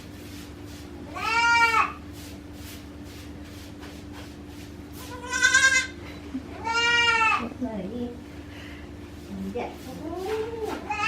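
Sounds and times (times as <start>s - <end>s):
goat kid bleating: 1.1s - 2.0s, 5.0s - 7.5s, 10.8s - 11.0s.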